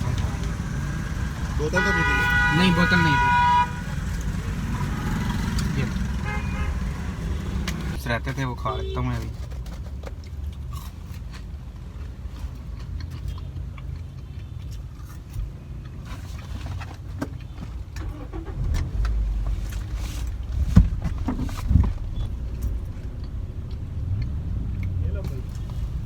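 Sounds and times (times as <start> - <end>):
car engine idling: 0.0 - 8.5, 18.0 - 26.0
clicks and rustles of handling: 9.2 - 18.1.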